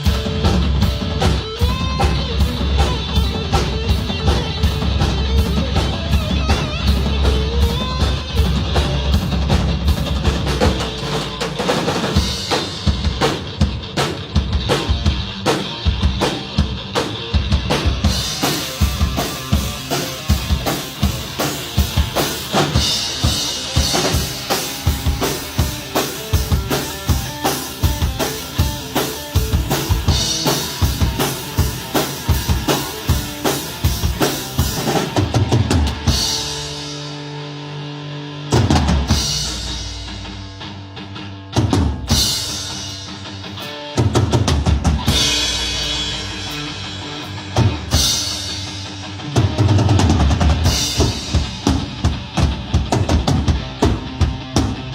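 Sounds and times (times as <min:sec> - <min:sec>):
drum kit fast beat: 0:00.0 - 0:54.9.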